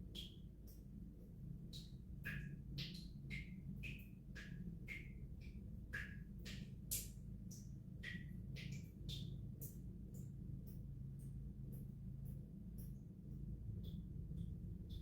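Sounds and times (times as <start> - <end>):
water drops plinking from tap: 0.0 - 0.9, 1.6 - 11.4
low steady hum: 0.0 - 15.0.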